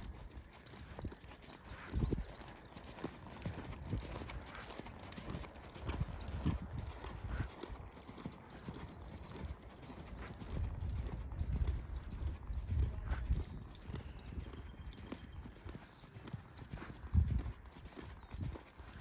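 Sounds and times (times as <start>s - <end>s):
horse hoofbeats: 0.0s - 19.0s.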